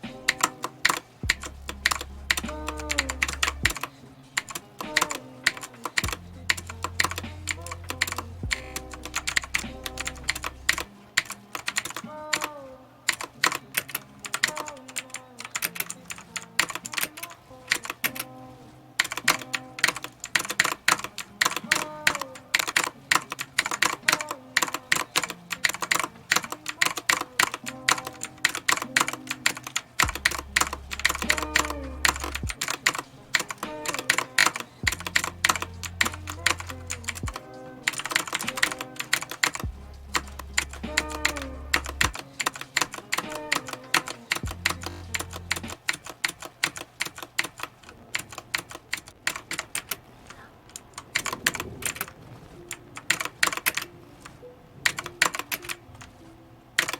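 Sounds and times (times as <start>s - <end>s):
clicky keyboard typing: 0.0s - 18.3s, 19.0s - 56.1s
music with deep bass: 1.2s - 3.8s, 6.1s - 10.7s, 30.0s - 32.6s, 39.6s - 42.2s, 44.4s - 45.7s.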